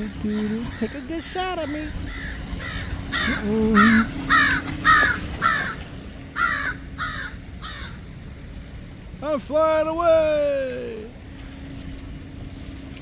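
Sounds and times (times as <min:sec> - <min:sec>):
bird giving harsh calls: 0:00.3 - 0:08.0.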